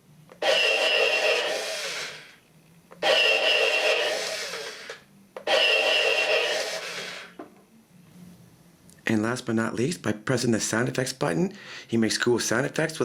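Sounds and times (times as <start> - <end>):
toy blaster firing sound effect: 0.3 - 2.4, 3.0 - 7.4.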